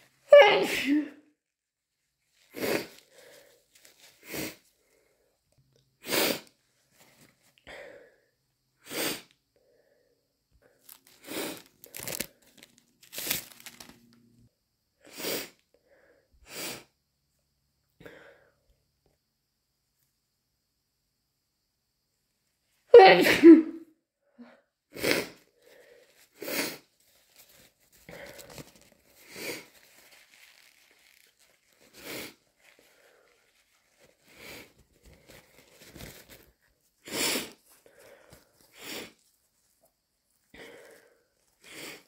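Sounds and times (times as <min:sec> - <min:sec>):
person sneezing: 0:00.3 - 0:01.2, 0:23.0 - 0:23.8, 0:37.1 - 0:37.6
woman sniffling wet nose: 0:02.5 - 0:03.4, 0:04.2 - 0:04.6, 0:06.0 - 0:06.5, 0:08.8 - 0:09.4, 0:24.9 - 0:25.5, 0:26.3 - 0:26.9, 0:31.8 - 0:32.4, 0:37.0 - 0:39.2, 0:41.6 - 0:42.0.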